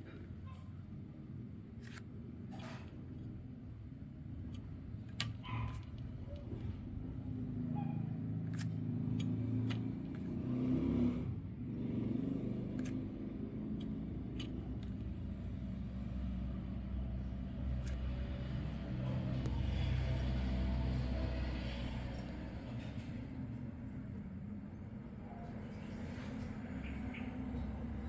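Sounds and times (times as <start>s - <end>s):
engine revving: 8.6s - 14.7s.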